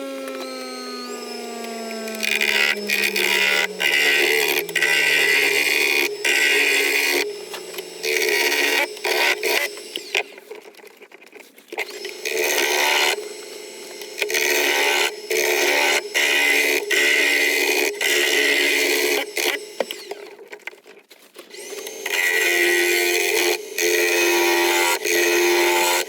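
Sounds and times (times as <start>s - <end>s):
gouge scraping spinning wood: 0.0s - 10.1s
lathe motor hum: 0.0s - 10.2s.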